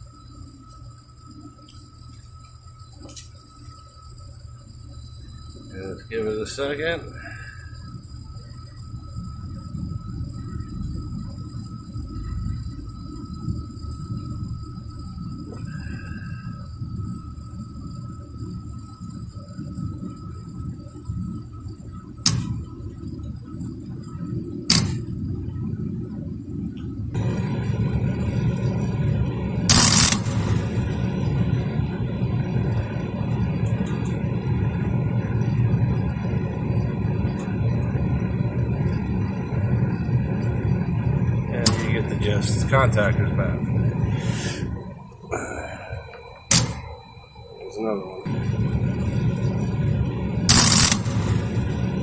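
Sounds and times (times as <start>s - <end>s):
hvac unit low hum: 0.0s - 52.0s
sharp clicks: 22.2s - 22.6s, 24.7s - 25.1s, 46.4s - 47.0s, 50.5s - 51.5s.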